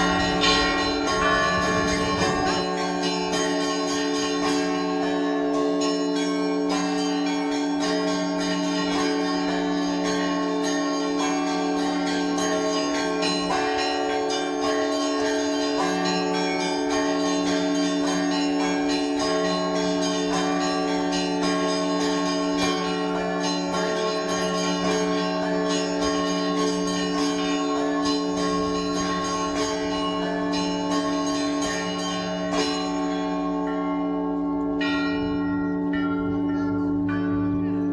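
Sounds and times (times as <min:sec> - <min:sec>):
small bells struck rapidly: 0:00.0 - 0:04.1
deep bells humming: 0:00.0 - 0:07.0, 0:21.8 - 0:37.9.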